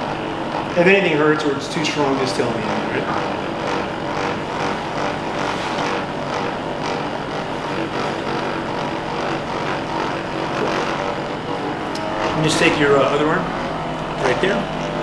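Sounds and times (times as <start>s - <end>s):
electric massager motor hum: 0.0s - 15.0s.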